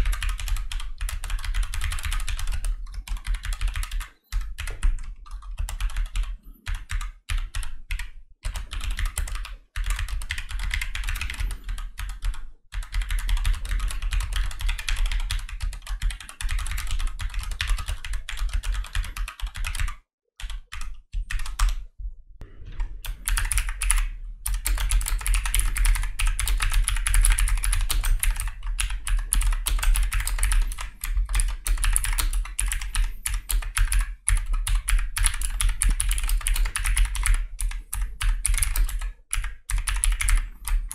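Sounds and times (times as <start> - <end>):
keyboard typing: 0.0 - 21.8, 22.5 - 40.9.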